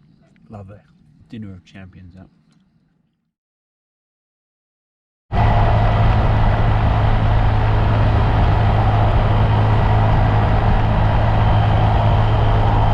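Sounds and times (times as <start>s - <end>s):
rushing noise: 5.3s - 12.9s.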